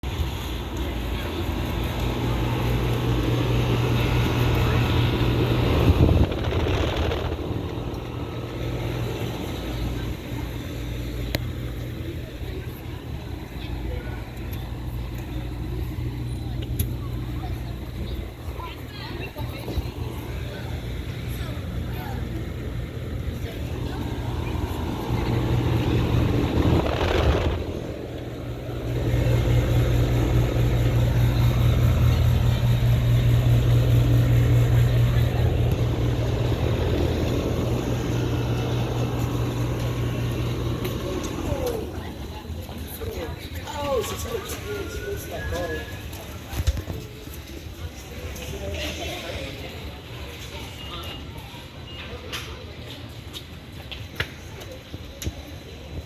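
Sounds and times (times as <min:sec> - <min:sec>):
fans rushing: 0:00.0 - 0:47.6
low compressor hum: 0:01.5 - 0:42.4
air rush: 0:04.7 - 0:10.0, 0:23.6 - 0:42.0.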